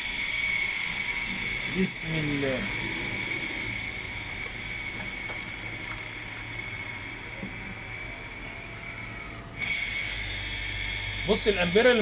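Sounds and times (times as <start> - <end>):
low electrical hum: 0.0 - 12.0
washing machine motor whine: 0.0 - 12.0.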